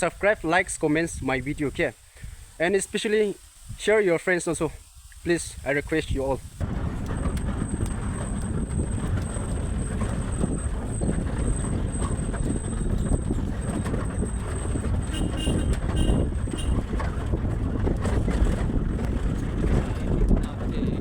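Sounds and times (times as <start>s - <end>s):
wind buffeting microphone: 4.8s - 21.0s
excavator diesel engine rumbling: 6.6s - 21.0s.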